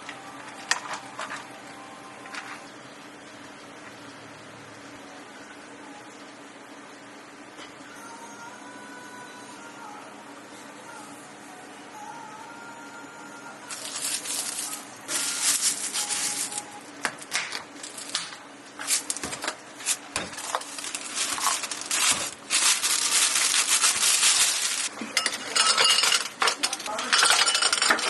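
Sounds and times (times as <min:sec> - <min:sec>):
rustling and crinkling: 0:13.7 - 0:24.9.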